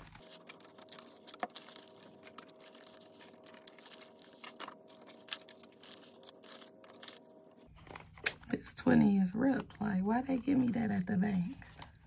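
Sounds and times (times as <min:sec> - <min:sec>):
banknotes rustling: 0:00.0 - 0:08.2
low electrical hum: 0:00.0 - 0:12.0.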